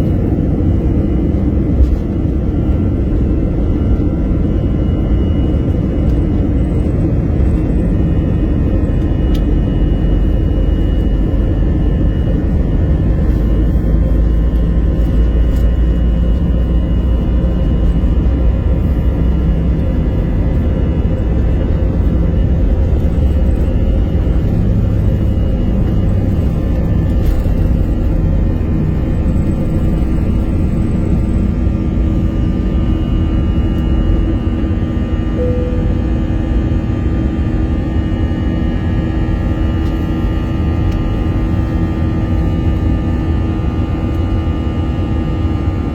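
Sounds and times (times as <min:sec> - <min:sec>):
airliner engine rumble in cabin: 0:00.0 - 0:45.9
faint steady high tones: 0:35.4 - 0:36.8.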